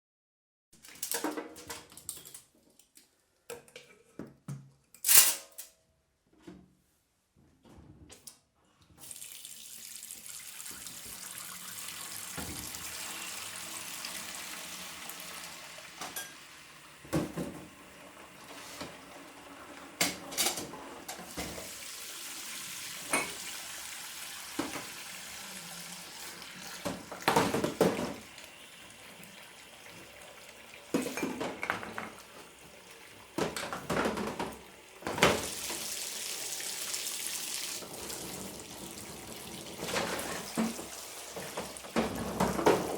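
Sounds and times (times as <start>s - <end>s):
tap water running: 9.0s - 42.9s
dishes and cutlery clattering: 16.0s - 16.4s, 23.0s - 23.4s, 30.9s - 32.2s.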